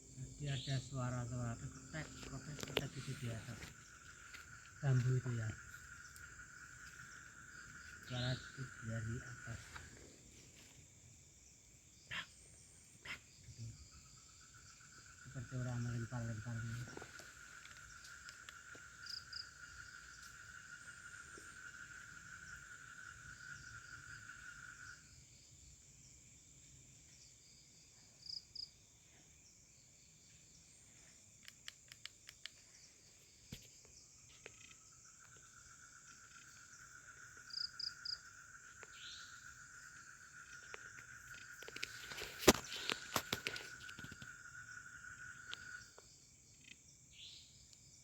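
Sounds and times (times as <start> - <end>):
high-pitched insect buzz: 0.0 - 10.7
low insect trill: 0.0 - 48.0
faint clicks: 17.1 - 18.8, 31.4 - 32.7, 39.9 - 44.4.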